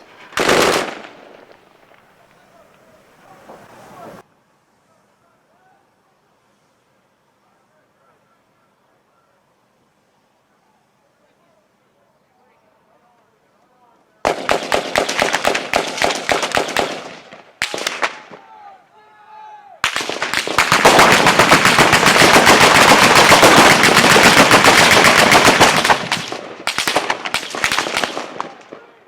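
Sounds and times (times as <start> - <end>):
automatic gunfire bursts: 0.0 - 1.6, 14.3 - 18.2, 19.8 - 28.8.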